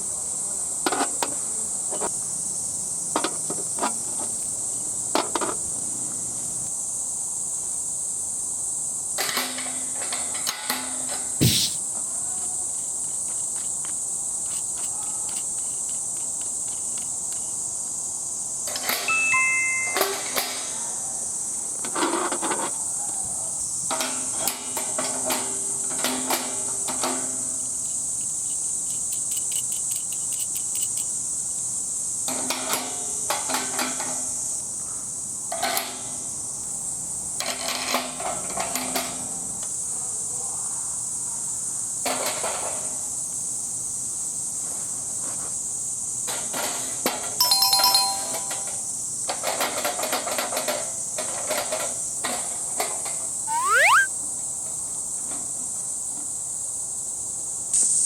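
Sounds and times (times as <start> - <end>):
insects chirring: 0.0 - 33.4, 53.4 - 54.1
bell-like metal ring: 19.1 - 20.4, 47.4 - 48.7
metallic clinks and clatter: 27.8 - 31.1.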